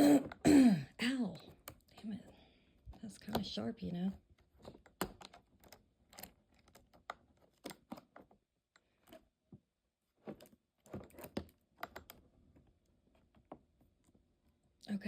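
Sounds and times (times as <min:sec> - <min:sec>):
small parts clicking and knocking: 0:04.4 - 0:09.2.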